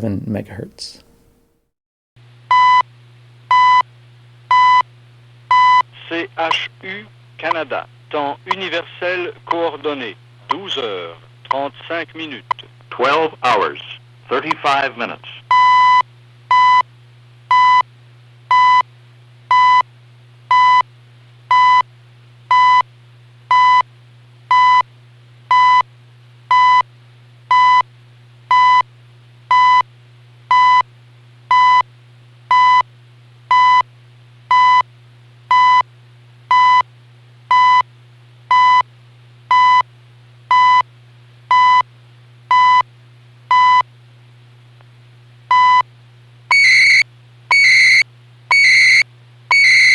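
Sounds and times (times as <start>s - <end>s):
low radio hum: 0.0s - 1.3s, 2.3s - 16.4s
short high beeps: 46.5s - 49.9s.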